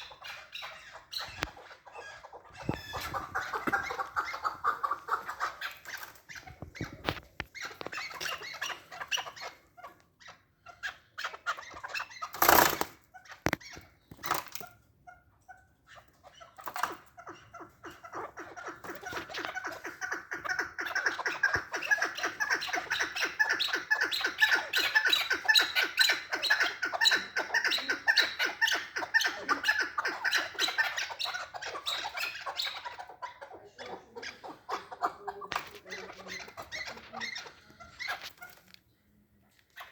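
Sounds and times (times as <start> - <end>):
partridge clucking: 1.2 - 9.5.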